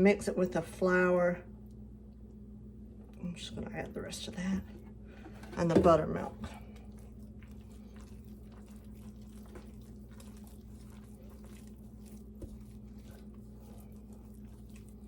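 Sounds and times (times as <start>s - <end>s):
steady low hum: 0.0s - 15.0s
hands kneading wet dough: 3.0s - 15.0s.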